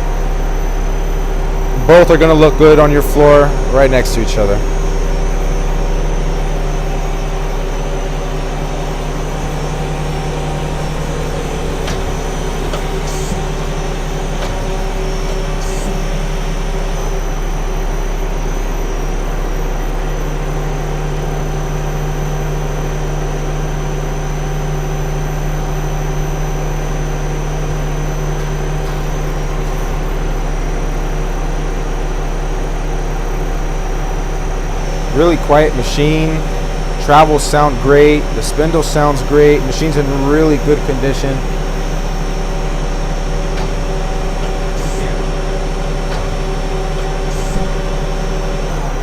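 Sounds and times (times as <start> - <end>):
machine drives humming: 0.0 - 49.0.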